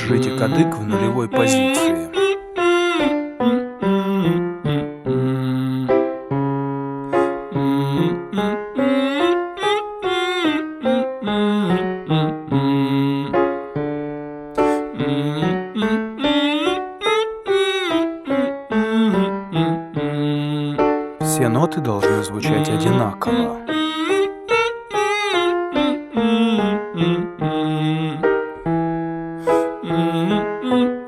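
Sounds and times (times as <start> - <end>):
person singing short phrases: 0.0 - 2.3, 4.0 - 6.0, 7.5 - 8.6, 21.4 - 23.7, 29.4 - 30.8
piano playing repeated chords: 0.0 - 31.0.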